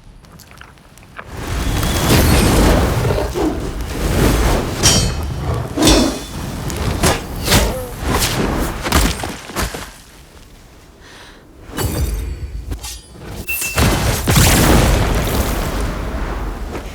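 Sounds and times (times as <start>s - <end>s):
sweeping whooshes: 1.3s - 8.8s
sharp hits and impacts: 4.2s - 9.4s.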